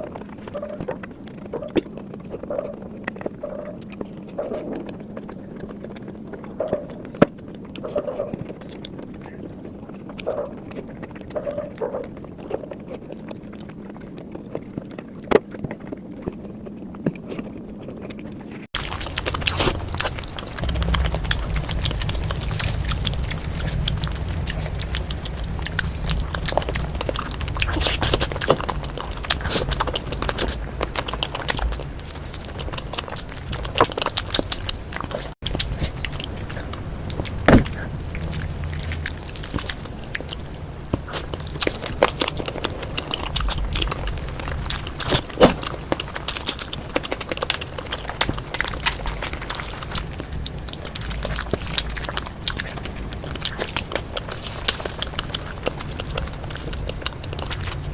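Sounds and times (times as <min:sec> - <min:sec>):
chewing with wet mouth clicks: 0:00.0 - 0:57.9
low hum: 0:18.7 - 0:57.9.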